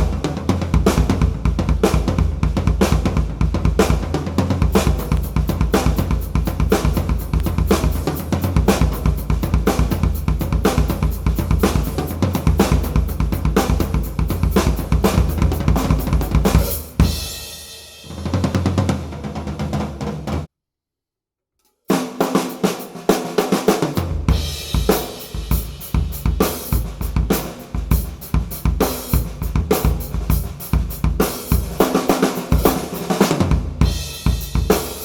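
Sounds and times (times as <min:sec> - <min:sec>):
drum kit ringing out: 0:00.0 - 0:20.5, 0:21.9 - 0:35.0
fast drum kit playing: 0:00.0 - 0:20.5, 0:21.9 - 0:35.0.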